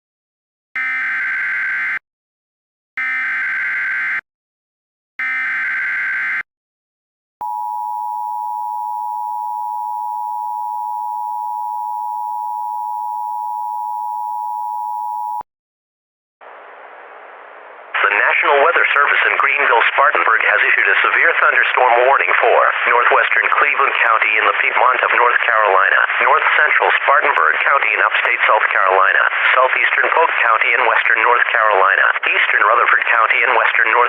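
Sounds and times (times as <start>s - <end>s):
two-tone attention signal: 7.4s - 15.4s.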